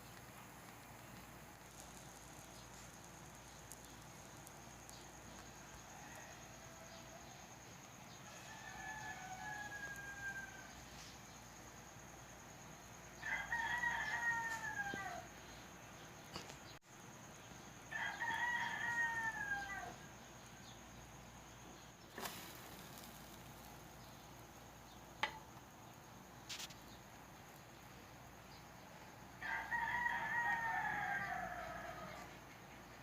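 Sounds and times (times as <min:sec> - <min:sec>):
rooster crowing: 0:05.3 - 0:07.6, 0:08.2 - 0:10.9, 0:13.2 - 0:15.4, 0:17.8 - 0:20.1, 0:29.4 - 0:32.5.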